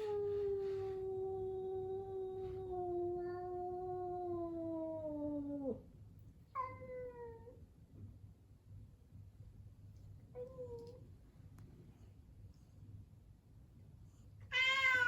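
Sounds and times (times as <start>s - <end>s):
cat yowling: 14.5s - 15.0s.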